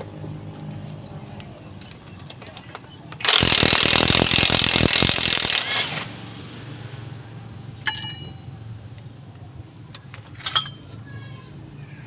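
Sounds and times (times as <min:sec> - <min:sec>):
metal part clinking: 0:07.8 - 0:10.9.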